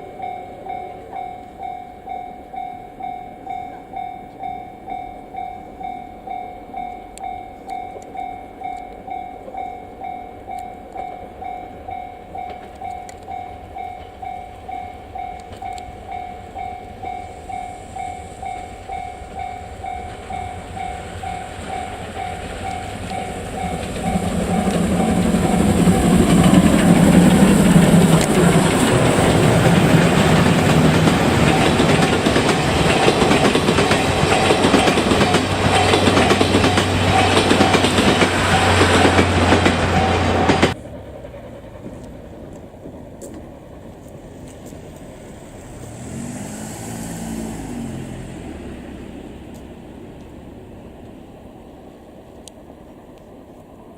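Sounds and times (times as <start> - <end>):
level-crossing bell ringing: 0.0 - 40.8
steam train passing: 0.0 - 53.9.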